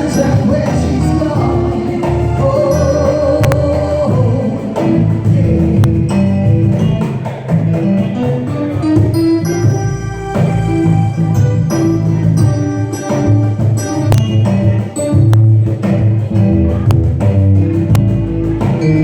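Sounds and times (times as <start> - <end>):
person singing: 0.0 - 6.9
live band playing: 0.0 - 19.0.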